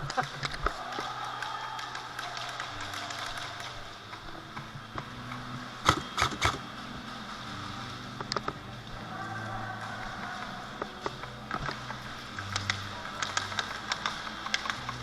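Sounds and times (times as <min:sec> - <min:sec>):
airsoft gun pops: 0:05.8 - 0:06.6
faint clicks: 0:09.8 - 0:15.0.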